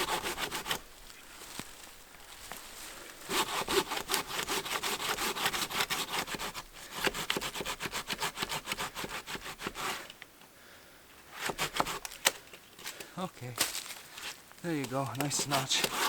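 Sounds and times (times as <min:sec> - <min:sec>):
hand saw cutting wood: 0:00.0 - 0:00.8, 0:03.3 - 0:10.2, 0:11.3 - 0:12.2, 0:14.8 - 0:16.0.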